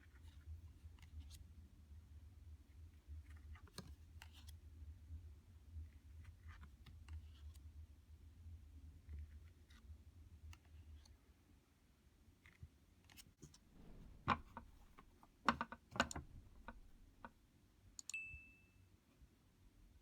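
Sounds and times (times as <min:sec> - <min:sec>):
click with high ring: 0:18.0 - 0:18.9.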